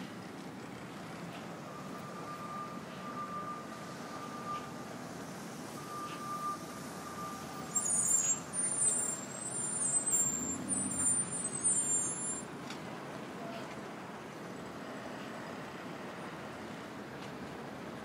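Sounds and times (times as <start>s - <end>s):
street traffic: 0.0s - 18.0s
brakes squealing: 0.6s - 12.5s.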